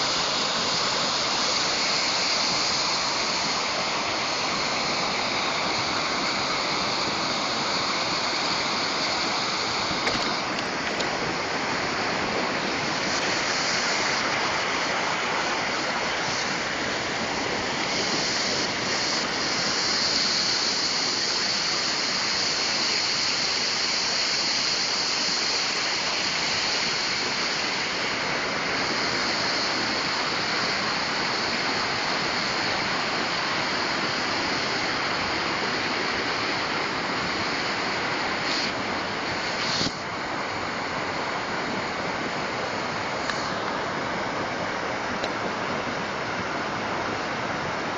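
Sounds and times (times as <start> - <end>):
waterfall rushing: 0.0 - 47.9.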